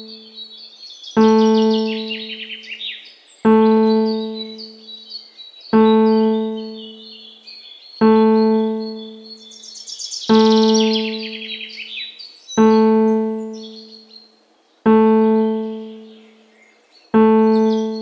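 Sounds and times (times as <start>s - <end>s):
piano-like keyboard note: 0.0s - 0.3s, 1.2s - 2.6s, 3.5s - 4.8s, 5.8s - 7.0s, 8.0s - 9.4s, 10.3s - 11.6s, 12.6s - 13.9s, 14.9s - 16.2s, 17.2s - 18.0s
birds chirping: 0.0s - 18.0s.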